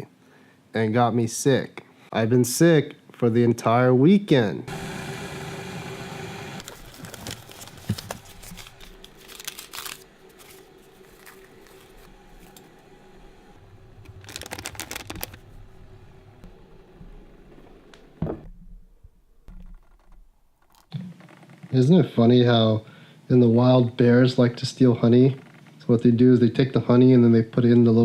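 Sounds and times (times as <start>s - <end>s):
crinkling and rustling: 6.6s - 12.9s, 14.0s - 15.8s.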